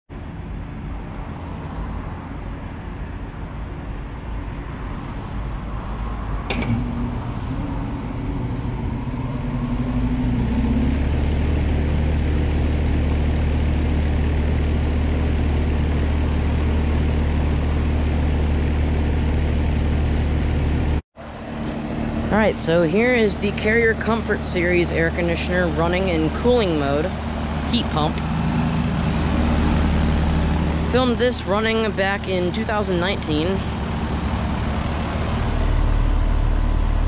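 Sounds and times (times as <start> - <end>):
heat pump humming: 6.3 - 37.0
heat pump relay click: 6.5 - 7.4.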